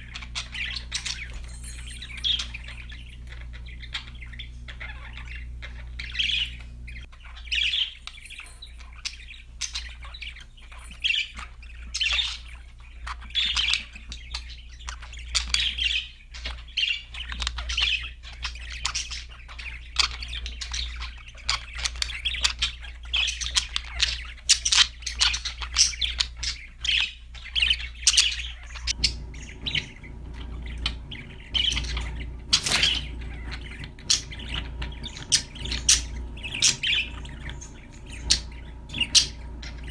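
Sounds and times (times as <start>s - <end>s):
budgerigars chirping and squawking: 0.0s - 39.9s
low hum: 28.9s - 39.9s.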